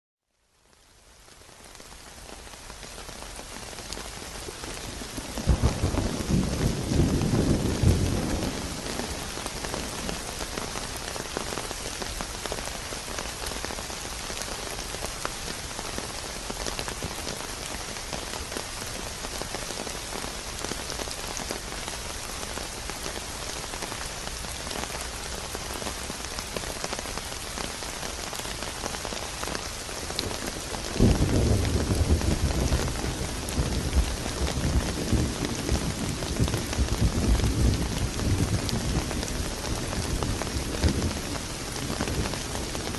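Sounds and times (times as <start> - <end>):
steady rain falling: 0.2 - 42.9
thunder rumbling: 4.9 - 10.3, 30.3 - 42.9.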